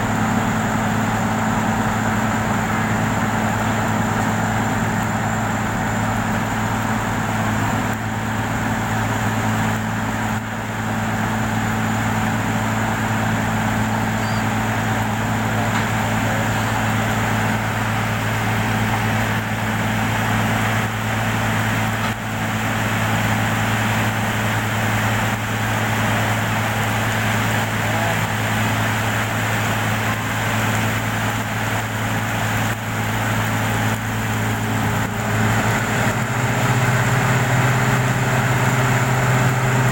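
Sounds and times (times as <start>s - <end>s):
large engine low hum: 0.0s - 39.9s.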